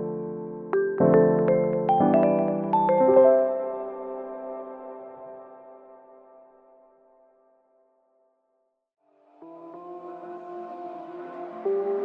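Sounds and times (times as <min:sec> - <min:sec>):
soft piano piece: 0:00.0 - 0:06.9.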